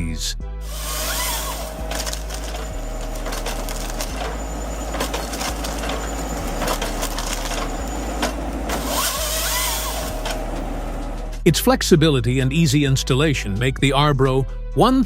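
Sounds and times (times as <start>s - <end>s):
tree-cutting machine hum: 0.6s - 11.4s
wood crackling and splintering: 0.7s - 11.4s.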